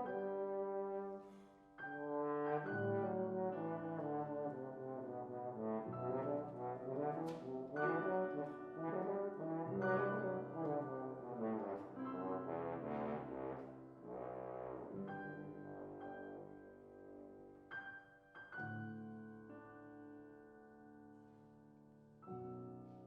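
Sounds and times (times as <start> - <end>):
french horn melody: 0.0 - 17.7
piano: 0.0 - 23.0.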